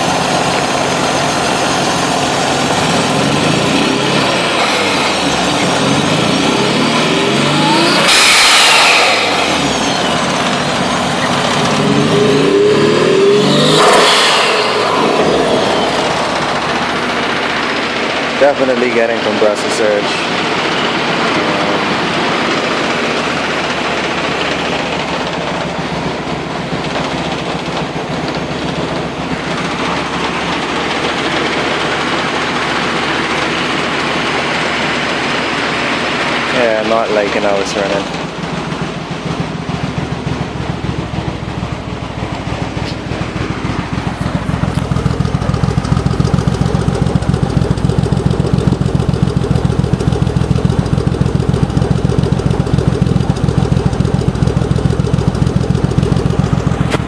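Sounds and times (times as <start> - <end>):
car engine revving: 0.0 - 57.0
loud rush of air: 4.2 - 18.4.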